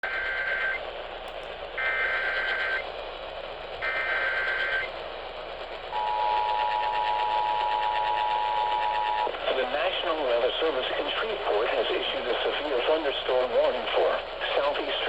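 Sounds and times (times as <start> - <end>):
radio static hiss: 8.8 - 15.0.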